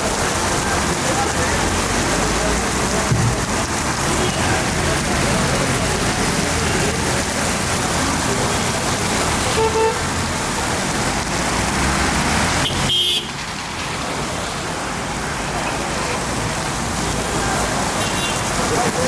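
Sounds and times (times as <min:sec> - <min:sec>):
heavy rain pouring: 0:00.0 - 0:19.0
street traffic: 0:00.0 - 0:19.0
car horn toot: 0:09.5 - 0:10.0, 0:12.6 - 0:13.3.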